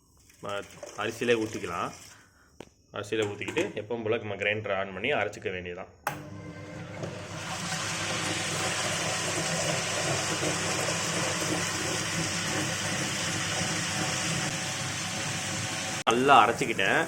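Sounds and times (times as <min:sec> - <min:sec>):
wet grinder humming: 0:06.1 - 0:17.0.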